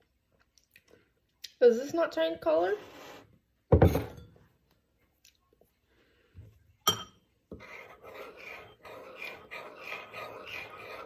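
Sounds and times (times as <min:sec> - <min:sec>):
whisk scraping strokes: 0:07.5 - 0:11.0.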